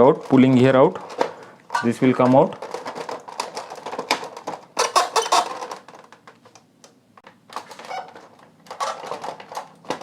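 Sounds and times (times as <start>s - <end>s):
plastic clicks and rattles: 0.2s - 10.0s.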